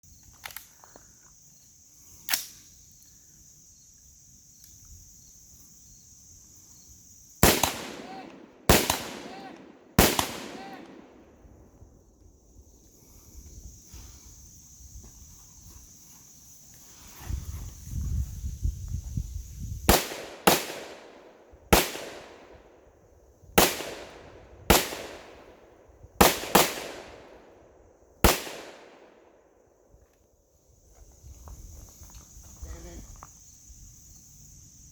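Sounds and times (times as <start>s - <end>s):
gunshots: 7.4s - 11.3s, 19.9s - 22.6s, 23.6s - 25.6s, 26.2s - 27.5s, 28.2s - 29.2s.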